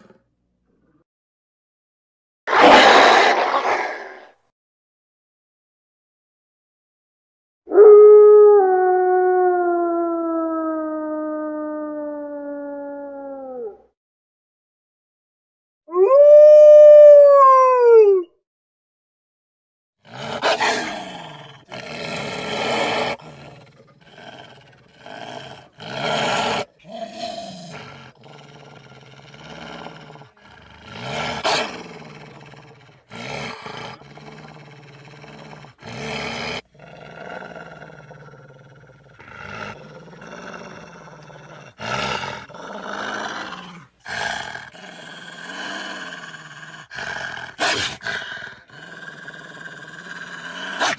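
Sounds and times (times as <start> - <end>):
wolves growling and snarling: 2.5 - 4.3, 20.0 - 50.9.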